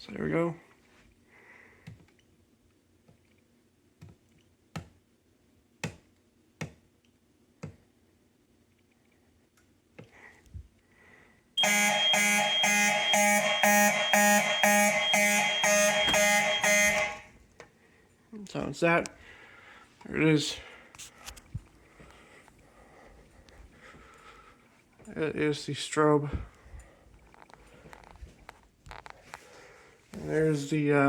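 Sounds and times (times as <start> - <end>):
fire alarm horn pulsing: 11.6 - 17.3.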